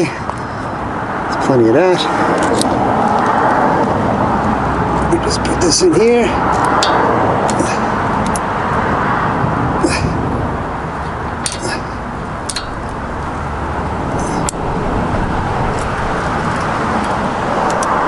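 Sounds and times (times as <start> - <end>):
steady background noise: 0.0 - 18.0
metal tools clicking: 6.6 - 7.6, 11.4 - 11.8, 12.5 - 13.0.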